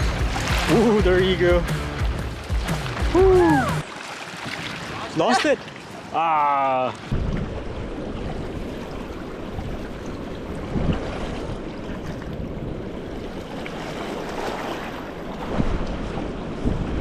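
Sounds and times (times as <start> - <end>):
river water rushing: 0.0 - 7.1
wind buffeting microphone: 7.1 - 17.0.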